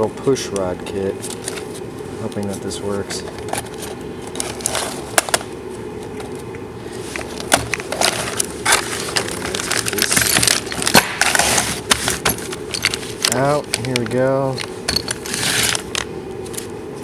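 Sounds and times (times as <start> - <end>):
steady low hum: 0.0 - 17.0
packaging rustling: 1.2 - 17.0
small metal parts clinking: 7.2 - 16.6.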